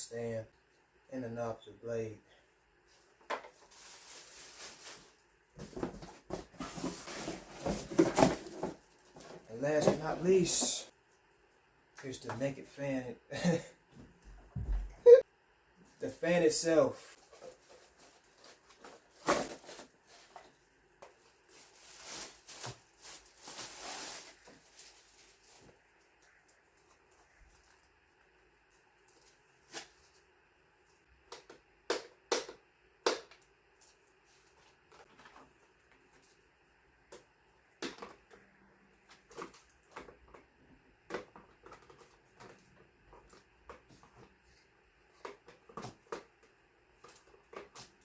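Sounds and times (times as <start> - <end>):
rustling: 2.9 - 9.5, 17.1 - 30.3.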